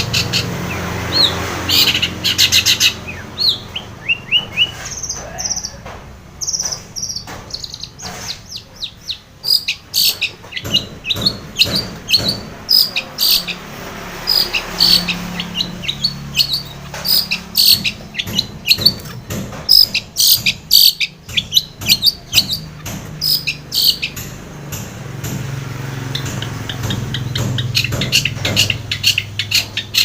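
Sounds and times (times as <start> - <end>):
bird singing sharp high notes: 11.8 - 18.8, 19.7 - 24.2.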